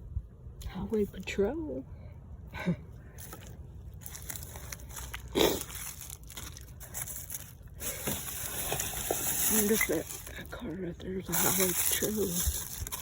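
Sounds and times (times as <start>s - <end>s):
debris crinkling and crunching: 3.2s - 13.0s.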